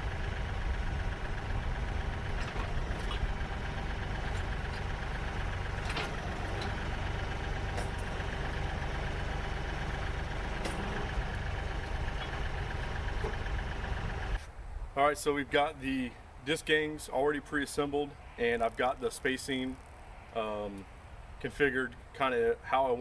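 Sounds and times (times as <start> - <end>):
diesel engine idling: 0.0 - 14.4.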